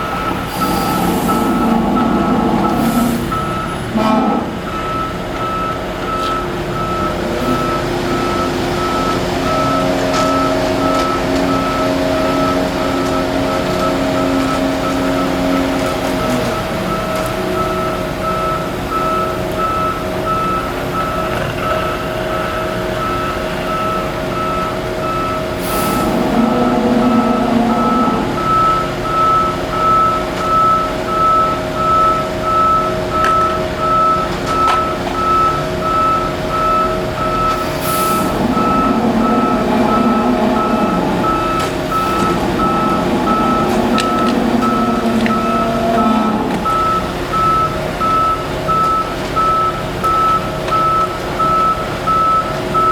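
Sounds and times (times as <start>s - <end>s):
reversing alarm beeping: 0.0s - 52.9s
truck engine running: 0.0s - 52.9s
air hisses: 25.6s - 28.4s.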